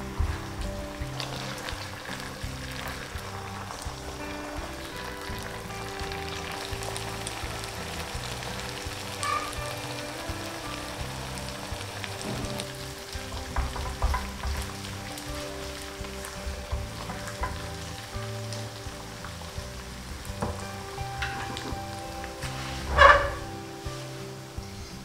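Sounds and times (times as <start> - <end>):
oil sizzling in a pan: 0.0 - 25.0
soft background music: 0.0 - 25.0
knocks: 13.3 - 14.8.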